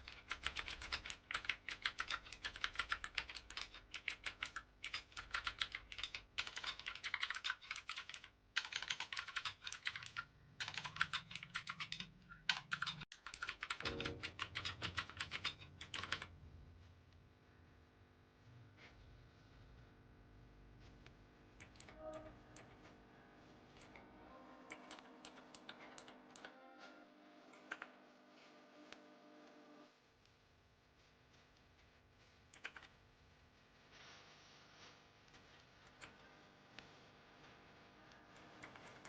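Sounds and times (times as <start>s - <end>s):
fast clicky keyboard typing: 0.0s - 16.3s, 21.6s - 22.8s, 24.7s - 26.5s, 32.6s - 32.9s, 38.6s - 39.0s.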